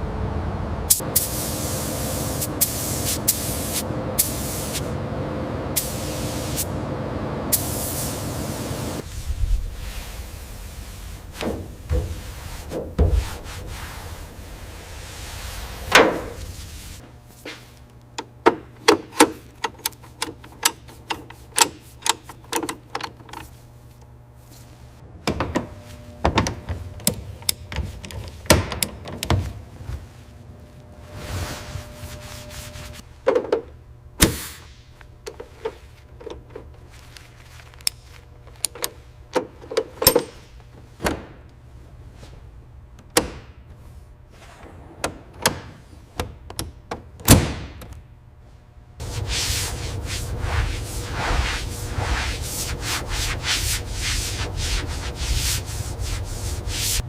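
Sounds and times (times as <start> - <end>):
faint steady hum: 0.0 - 57.0
tools being handled: 18.2 - 23.6.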